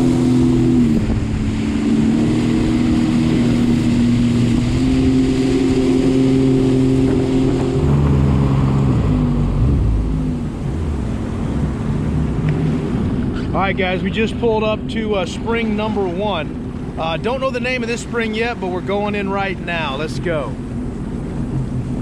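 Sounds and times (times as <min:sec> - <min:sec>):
jet ski engine running: 0:00.0 - 0:22.0.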